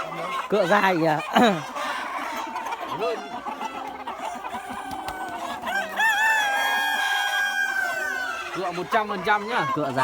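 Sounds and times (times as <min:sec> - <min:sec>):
chickens clucking: 0:00.0 - 0:10.0
rooster crowing: 0:04.7 - 0:08.5.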